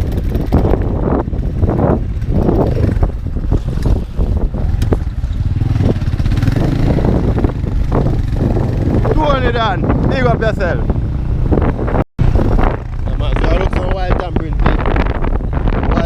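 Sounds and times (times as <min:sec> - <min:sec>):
motor vehicle running: 0:00.0 - 0:16.0
wind buffeting microphone: 0:00.0 - 0:16.0.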